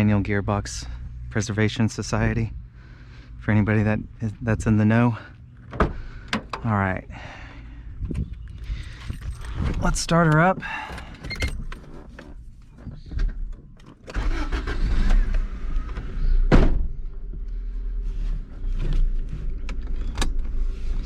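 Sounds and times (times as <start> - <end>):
car engine starting and idling: 0.0 - 21.0
sharp thunk: 16.5 - 16.9.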